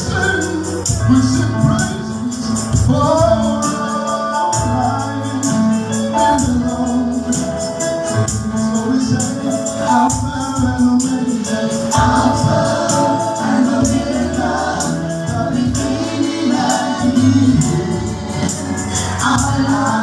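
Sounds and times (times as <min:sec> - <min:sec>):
tambourine shaken: 0:00.0 - 0:20.0
choir singing: 0:11.1 - 0:20.0.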